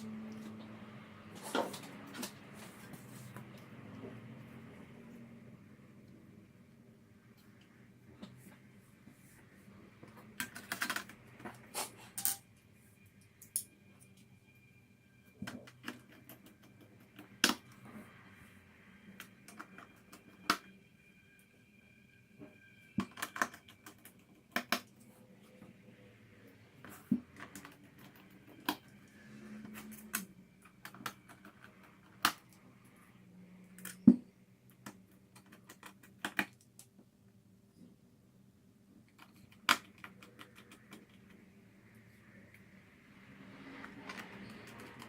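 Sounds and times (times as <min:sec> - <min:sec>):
small tools clicking and tapping: 0:10.3 - 0:12.4.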